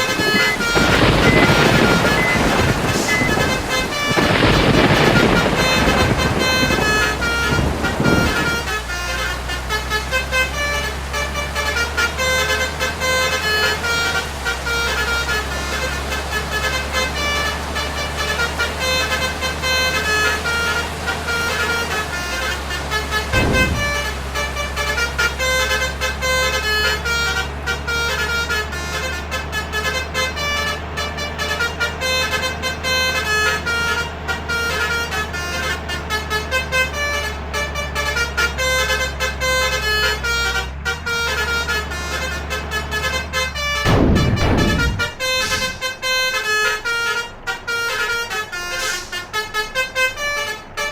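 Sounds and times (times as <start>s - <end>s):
low bus engine drone: 0.0s - 50.9s
multi-tone bus horn tune: 0.0s - 50.9s
brief louder rush: 43.9s - 46.0s.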